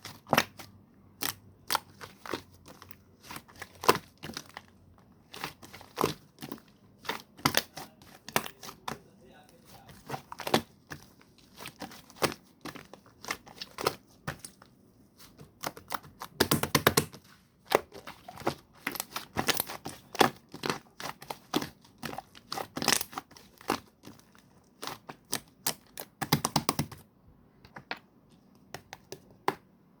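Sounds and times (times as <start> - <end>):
slime squishing and popping: 0.0 - 9.0, 9.6 - 27.0.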